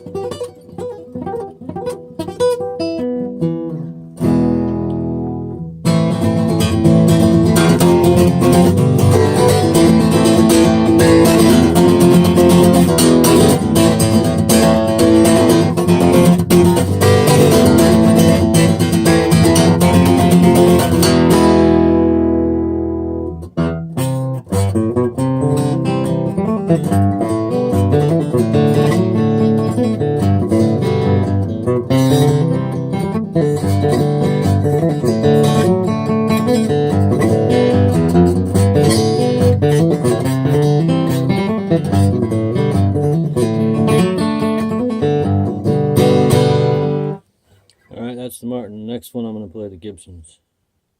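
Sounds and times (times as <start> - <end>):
guitar picking of single notes: 0.0 - 48.0
acoustic guitar strumming: 0.0 - 49.4.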